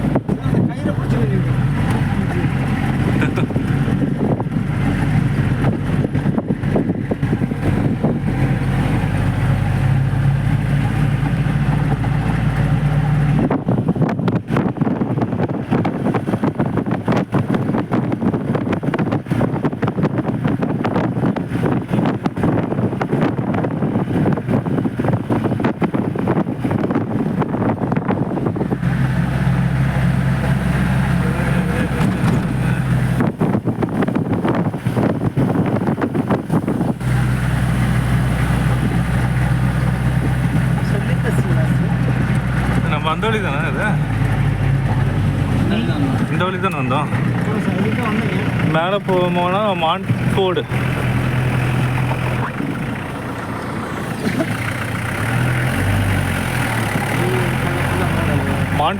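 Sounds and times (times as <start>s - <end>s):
jeep engine hum: 0.0s - 58.9s.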